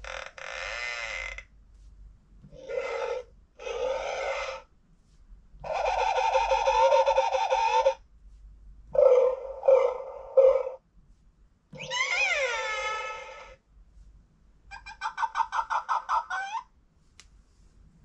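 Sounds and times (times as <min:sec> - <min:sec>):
animal calls from small speaker: 0:00.0 - 0:01.5, 0:02.4 - 0:04.7, 0:05.6 - 0:08.0, 0:08.9 - 0:10.8, 0:11.8 - 0:13.6, 0:14.7 - 0:16.7.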